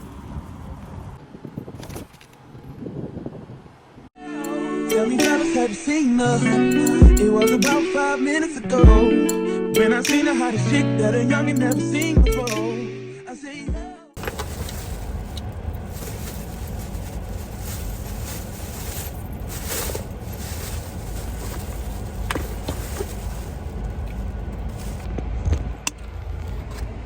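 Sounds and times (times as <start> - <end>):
vehicle rumble and hiss: 0.0 - 4.1, 14.2 - 27.0.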